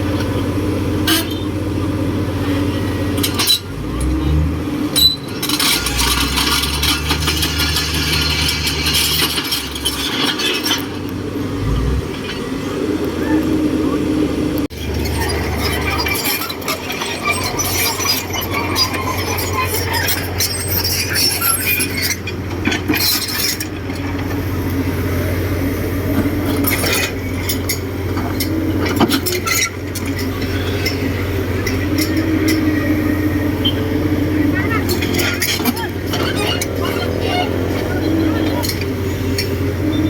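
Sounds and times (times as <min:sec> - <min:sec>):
heavy machinery diesel engine: 0:00.0 - 0:40.0.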